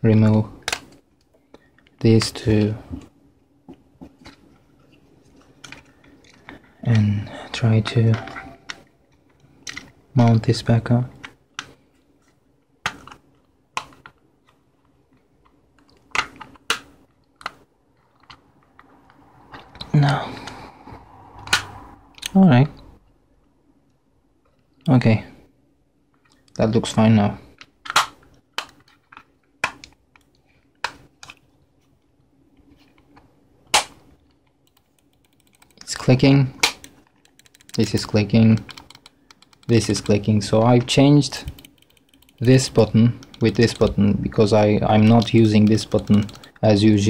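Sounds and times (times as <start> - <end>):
plastic mouse parts clicking: 9.6 - 9.9, 34.7 - 40.3, 41.4 - 44.0, 45.2 - 46.7.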